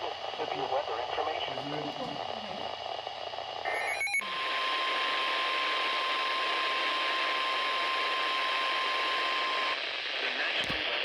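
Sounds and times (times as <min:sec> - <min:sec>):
radio static hiss: 0:00.0 - 0:11.0
digital data warble: 0:03.6 - 0:04.2.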